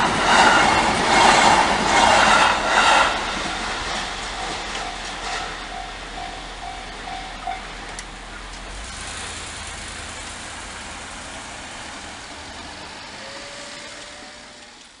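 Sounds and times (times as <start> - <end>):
vehicle engine hum: 7.6 - 15.0.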